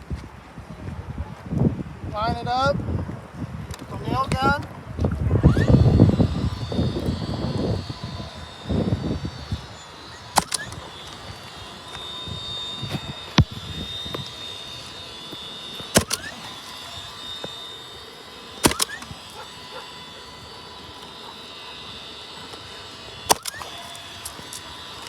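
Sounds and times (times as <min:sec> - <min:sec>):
nail gun firing: 0:05.4 - 0:25.0.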